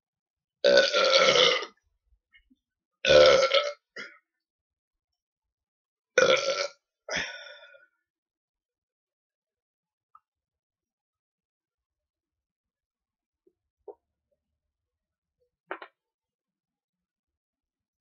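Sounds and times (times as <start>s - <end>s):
man belching loudly: 0.7s - 1.7s, 3.1s - 3.8s, 6.2s - 6.7s.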